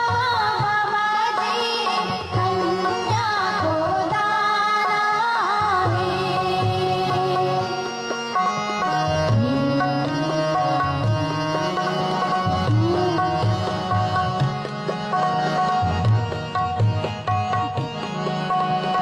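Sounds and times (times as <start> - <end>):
bending instrumental melody: 7.3 - 19.0.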